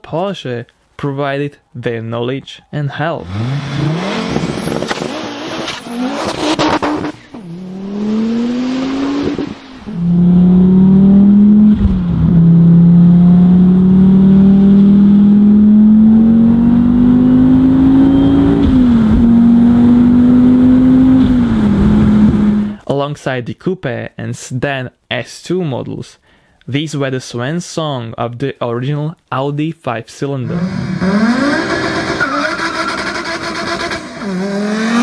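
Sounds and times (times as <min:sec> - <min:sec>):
car engine revving: 0:03.2 - 0:22.8, 0:30.4 - 0:35.0.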